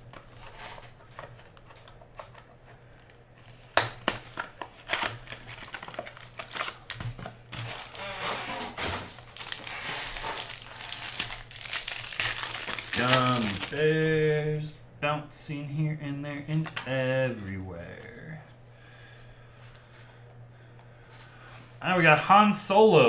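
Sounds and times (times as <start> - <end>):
cards clicking and rustling: 0.0 - 8.1, 8.8 - 14.0
card packaging snap: 3.4 - 8.0, 8.8 - 14.0.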